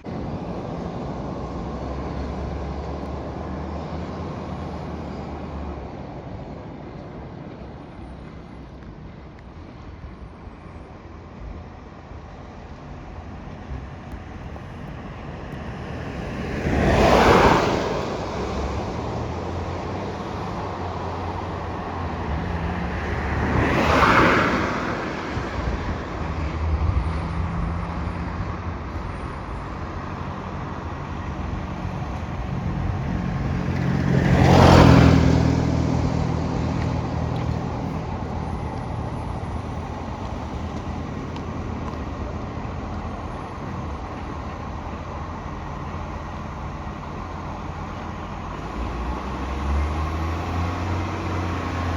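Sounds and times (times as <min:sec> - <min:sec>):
truck engine with exhaust leak: 0:24.8 - 0:51.9.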